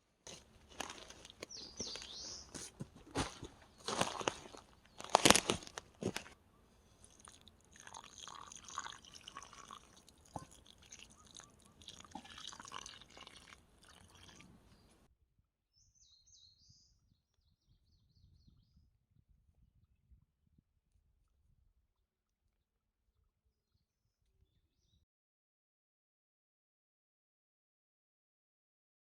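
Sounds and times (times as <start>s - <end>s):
small bird chirping: 1.1s - 2.6s, 10.3s - 12.1s
water dripping and splashing: 7.0s - 14.6s.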